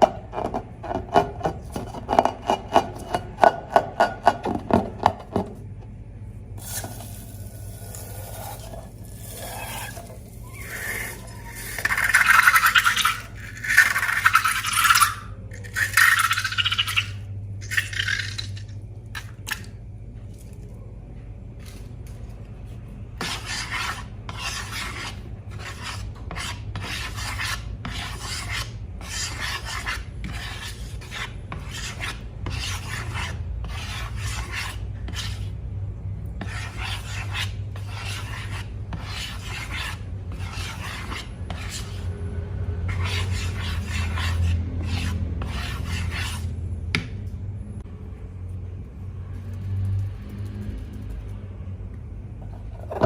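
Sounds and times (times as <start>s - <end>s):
steady low hum: 0.0s - 53.0s
rasping scraping strokes: 7.2s - 17.2s, 23.2s - 35.5s, 36.4s - 42.2s, 42.9s - 46.5s.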